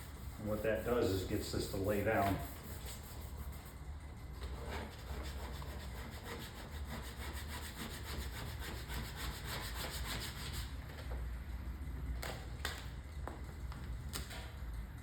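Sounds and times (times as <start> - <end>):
finger rubbing vinyl stripe: 0.0 - 3.8.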